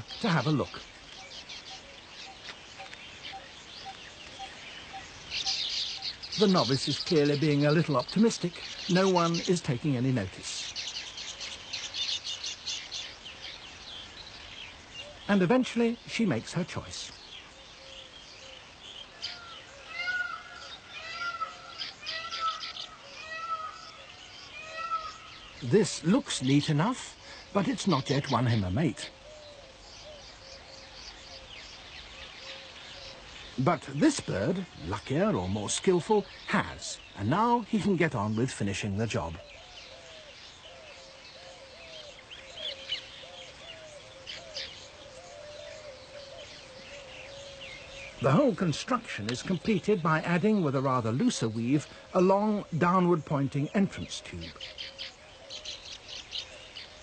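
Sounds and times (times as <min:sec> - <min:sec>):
scratchy bird chatter: 0:00.0 - 0:57.0
meow-like bird calls: 0:19.2 - 0:25.6.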